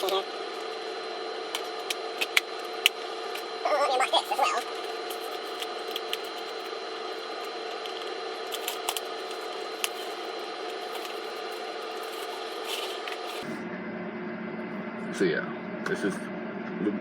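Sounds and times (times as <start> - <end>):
electrical hum: 0.0 - 17.0
paper rustling: 4.6 - 6.7, 7.4 - 13.5.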